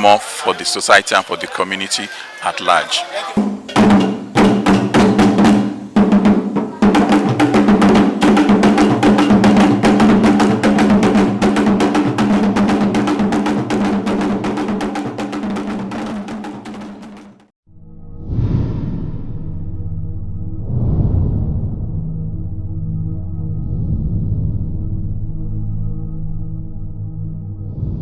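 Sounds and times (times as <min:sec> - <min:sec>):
fast dense drumming: 0:03.4 - 0:17.5
steady low tone: 0:17.7 - 0:28.0.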